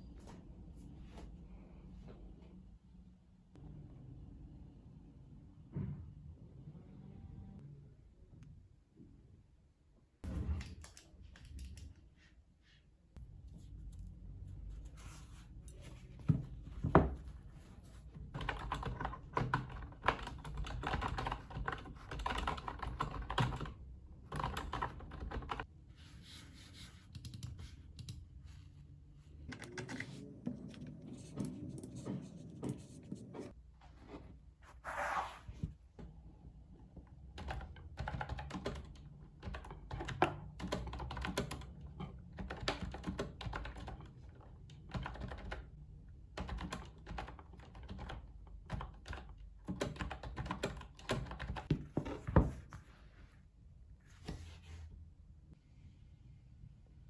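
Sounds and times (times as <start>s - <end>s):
typing on computer keyboard: 18.4s - 25.6s, 37.4s - 44.1s, 44.8s - 45.7s, 46.3s - 51.7s.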